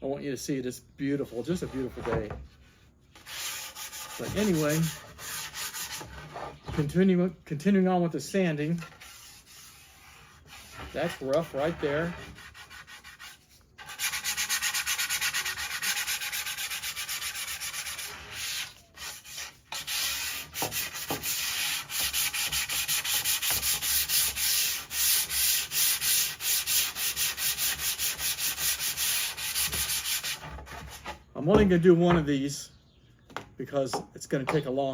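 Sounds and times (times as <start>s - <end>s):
sandpaper rubbing on wood: 2.6s - 6.9s, 8.7s - 31.2s.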